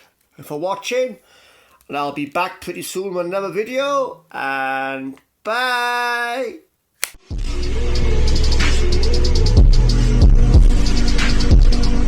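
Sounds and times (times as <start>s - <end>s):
steady drum beat: 8.2s - 12.0s.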